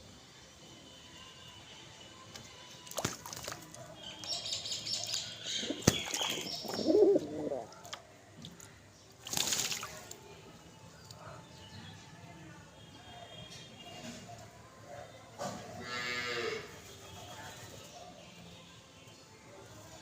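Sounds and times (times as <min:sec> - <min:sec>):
wings flapping and splashing: 0:02.3 - 0:03.8, 0:05.7 - 0:06.8, 0:09.2 - 0:10.2.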